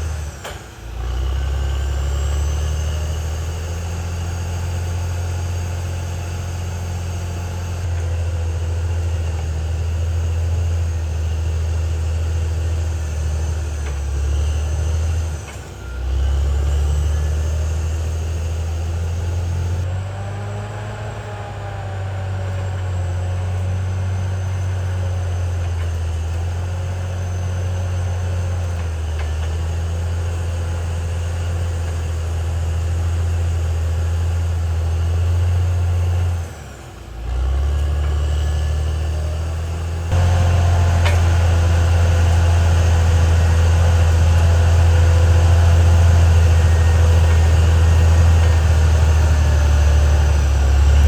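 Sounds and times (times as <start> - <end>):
bulldozer diesel engine running: 0.0 - 51.0.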